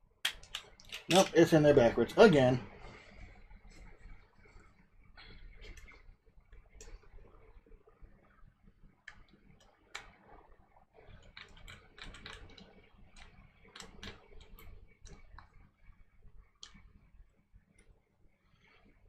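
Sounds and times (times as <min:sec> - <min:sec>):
pistol parts clicking: 0:00.2 - 0:01.3.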